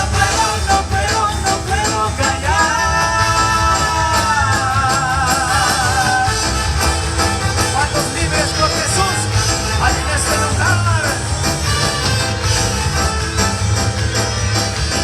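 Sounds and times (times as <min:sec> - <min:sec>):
live worship band music: 0:00.0 - 0:15.0.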